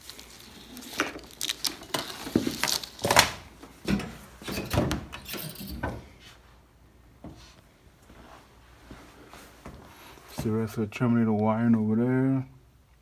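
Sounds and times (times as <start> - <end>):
knocks and clunks of handling: 0.8 - 6.3.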